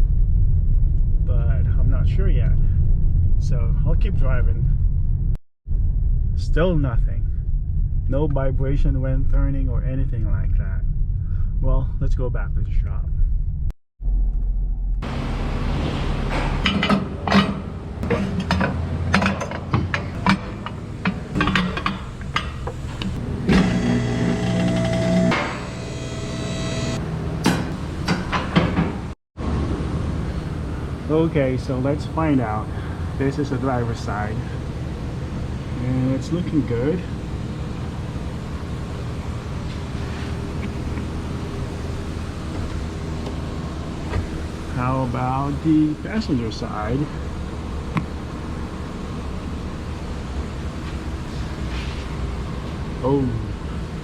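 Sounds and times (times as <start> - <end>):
low rumble and hiss: 0.0 - 13.7, 29.4 - 54.0
steady low hum: 0.0 - 54.0.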